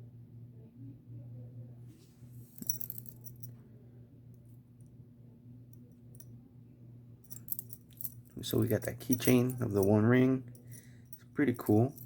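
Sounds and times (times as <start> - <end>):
steady low hum: 0.0 - 12.0
metal keychain clinking: 2.6 - 3.5, 7.3 - 12.0.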